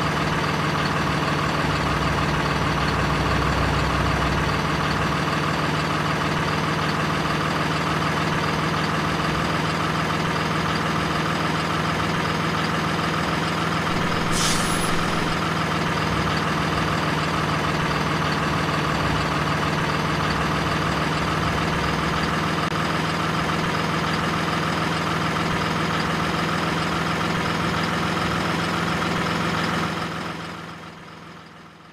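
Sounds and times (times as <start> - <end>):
diesel truck engine idling: 0.0 - 31.8
brief high hiss: 13.9 - 15.4.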